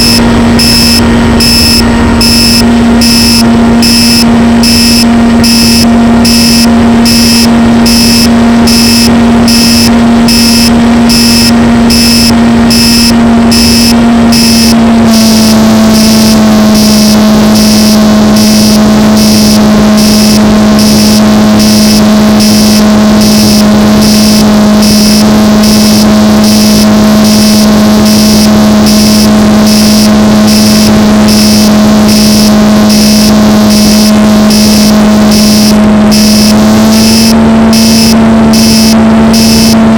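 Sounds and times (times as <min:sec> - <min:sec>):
model plane motor and propeller: 0:00.0 - 0:39.9.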